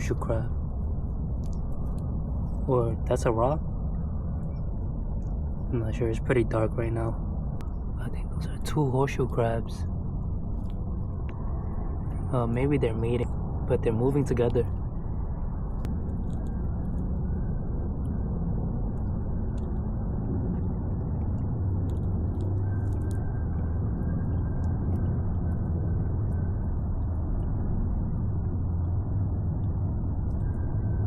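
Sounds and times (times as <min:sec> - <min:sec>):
low outdoor rumble: 0:00.0 - 0:31.0
faint ticks: 0:15.6 - 0:18.3, 0:18.9 - 0:31.0.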